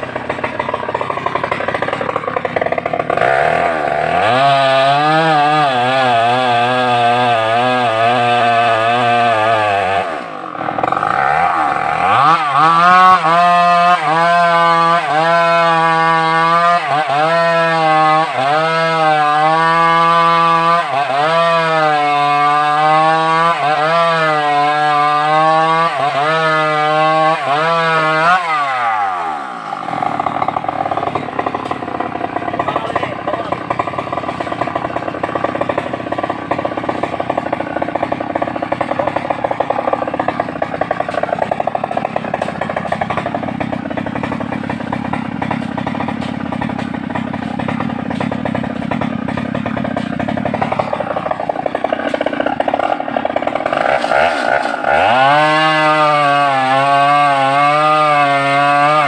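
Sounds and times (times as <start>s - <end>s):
chainsaw revving: 0.0s - 59.0s.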